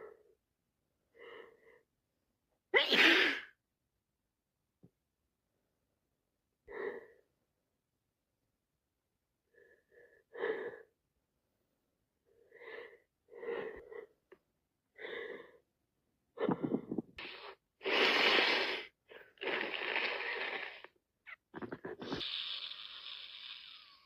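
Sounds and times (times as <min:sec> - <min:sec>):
woman sneezing: 0:02.8 - 0:03.5
wheezy catching breaths: 0:21.8 - 0:24.0.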